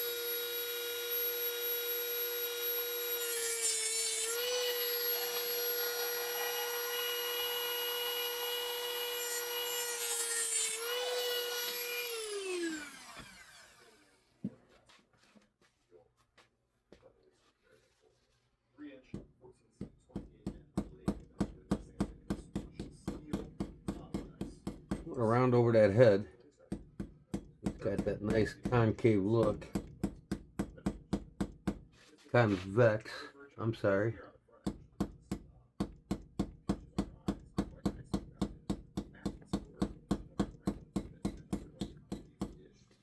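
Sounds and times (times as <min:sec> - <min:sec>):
small hammer striking metal: 0:34.7 - 0:42.6.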